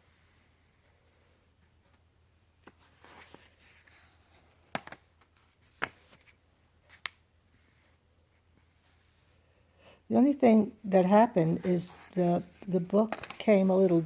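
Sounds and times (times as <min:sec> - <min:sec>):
paper rustling: 0:02.6 - 0:07.0.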